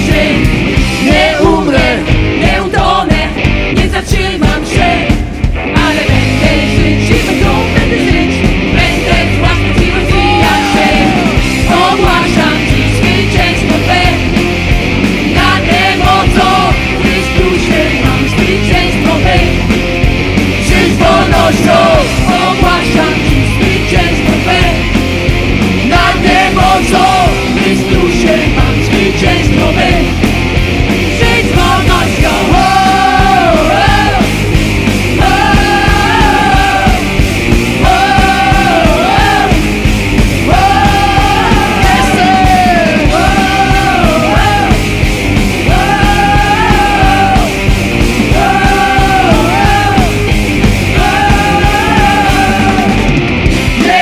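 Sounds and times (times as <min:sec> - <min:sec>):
person singing: 0:00.0 - 0:05.0, 0:05.8 - 0:14.3, 0:40.4 - 0:44.8, 0:51.0 - 0:53.1
rock band playing: 0:00.0 - 0:54.0.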